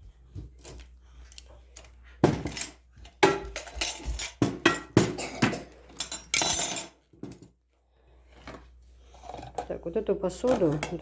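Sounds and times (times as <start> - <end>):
ceramic dishes clinking: 2.3 - 7.4.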